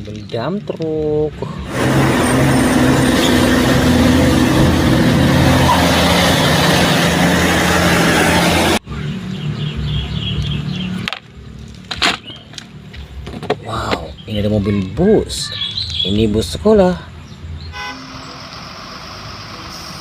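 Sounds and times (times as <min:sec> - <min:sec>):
rushing noise: 0:01.5 - 0:09.0
truck engine running: 0:01.5 - 0:11.9.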